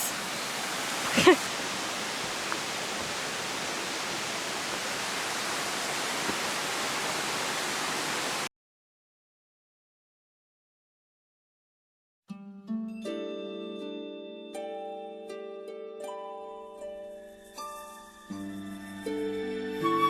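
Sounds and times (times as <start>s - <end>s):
waterfall splashing: 0.0s - 8.5s.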